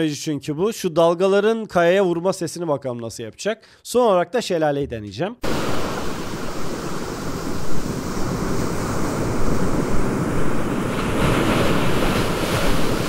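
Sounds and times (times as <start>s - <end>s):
waves breaking against rocks: 5.4s - 13.0s.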